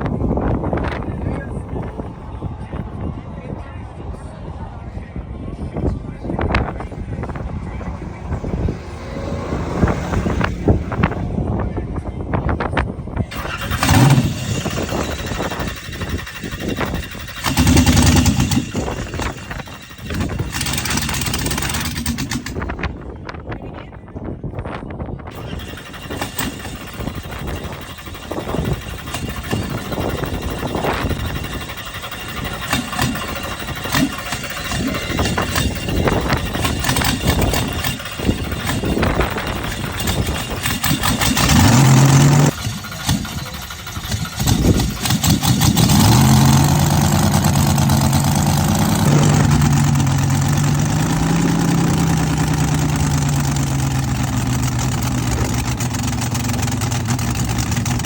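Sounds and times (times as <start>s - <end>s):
drag car engine idling: 5.2s - 23.7s, 25.2s - 58.0s
car starter cranking: 13.2s - 23.0s, 25.3s - 58.0s.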